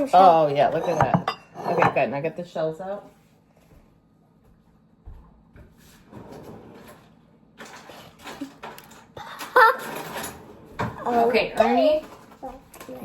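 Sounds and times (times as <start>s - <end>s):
rustling and scraping: 5.6s - 9.2s.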